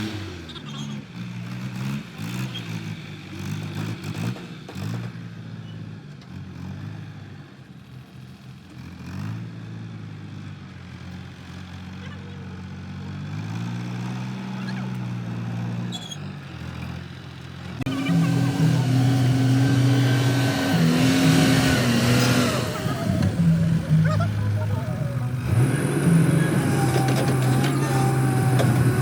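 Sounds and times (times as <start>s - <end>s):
cartoon vehicle engine hum: 11.3s - 29.0s.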